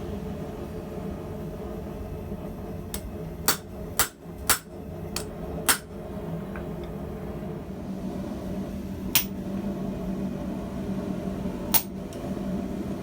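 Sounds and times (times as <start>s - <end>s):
steady low hum: 0.0s - 13.0s
hammer striking steel on anvil: 2.9s - 5.9s, 9.2s - 9.4s.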